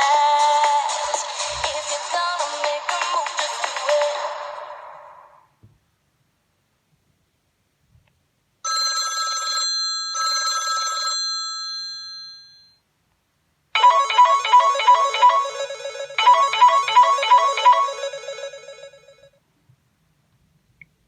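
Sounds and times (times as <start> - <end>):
phone ringtone chords: 13.8 - 19.3
looping ringtone melody: 13.8 - 19.4.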